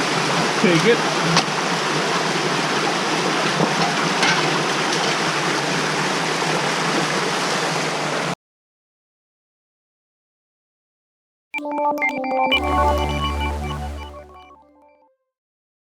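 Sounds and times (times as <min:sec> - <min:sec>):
creek water rushing: 0:00.0 - 0:08.3.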